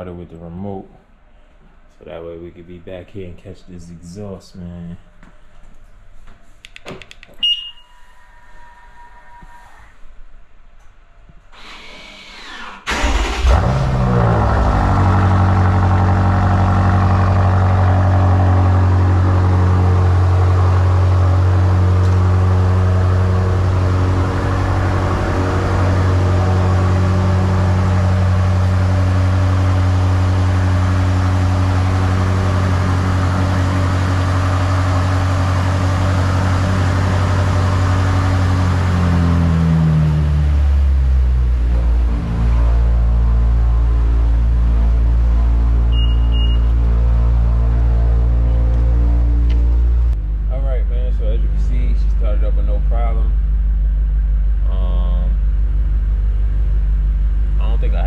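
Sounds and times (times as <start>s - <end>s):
car engine starting and idling: 11.6s - 58.0s.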